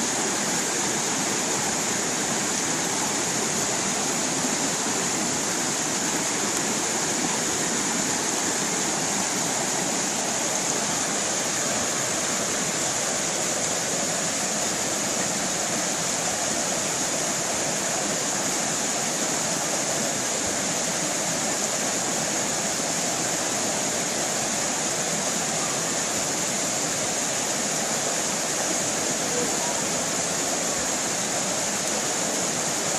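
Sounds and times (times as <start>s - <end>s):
stream rushing and splashing: 0.0s - 32.9s.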